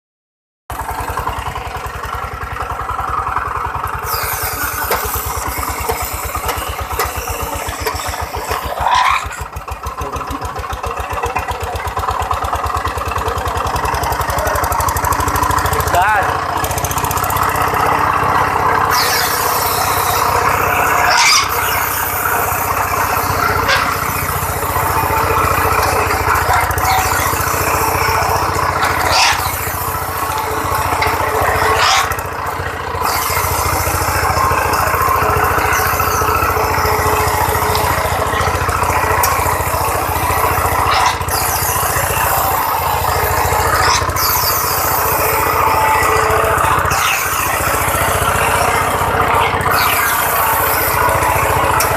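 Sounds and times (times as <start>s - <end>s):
production machine running: 0.7s - 51.9s.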